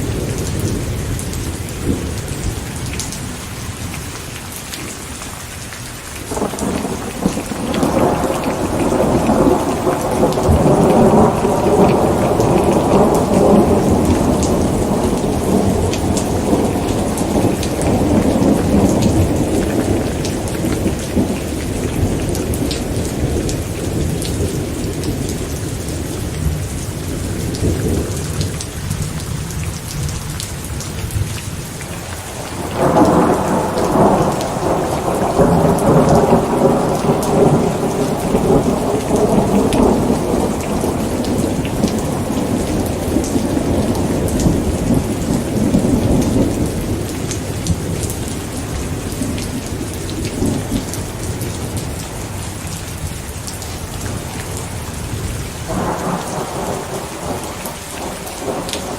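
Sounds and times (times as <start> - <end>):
rain pattering: 0.0 - 58.9
thunder rolling: 6.3 - 29.0, 32.3 - 52.0, 54.2 - 58.9.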